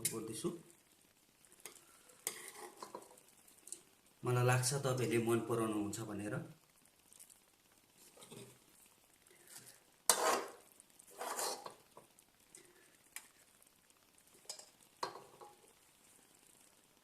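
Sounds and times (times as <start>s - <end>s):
spoon scraping and knocking dishes: 10.1s - 10.6s, 11.2s - 11.8s.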